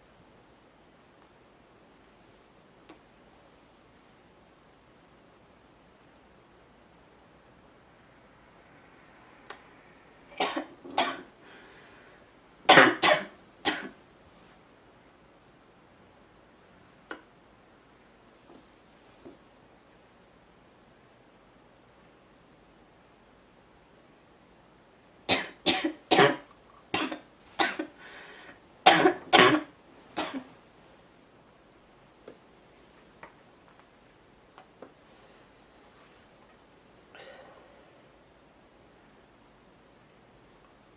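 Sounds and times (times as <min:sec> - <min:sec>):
woman coughing: 0:12.7 - 0:14.0, 0:25.3 - 0:28.0, 0:28.9 - 0:30.5.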